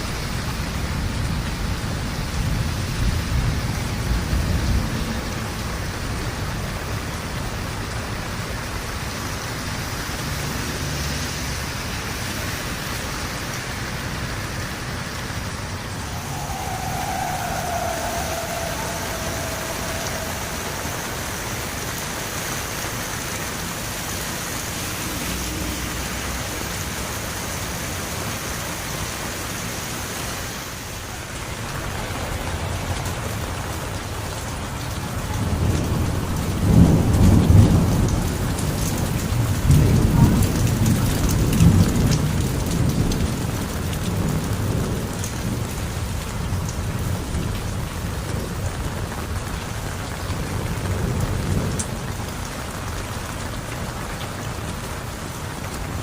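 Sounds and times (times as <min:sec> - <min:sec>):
heavy rain falling: 0:00.0 - 0:56.0
rolling thunder: 0:15.6 - 0:22.8, 0:31.2 - 0:53.5.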